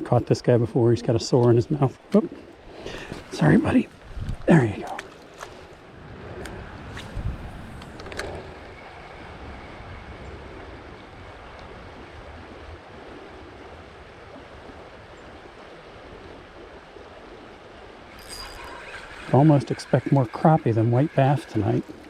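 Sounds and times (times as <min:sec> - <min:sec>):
wind buffeting microphone: 0:02.9 - 0:05.0, 0:05.9 - 0:14.9.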